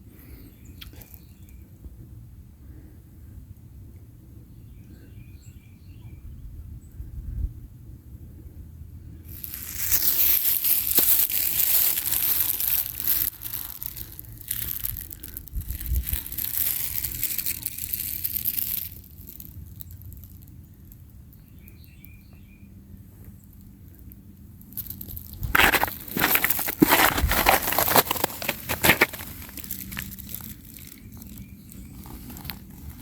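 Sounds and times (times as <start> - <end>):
crinkling rustling noise: 9.3 - 20.6, 24.6 - 33.0.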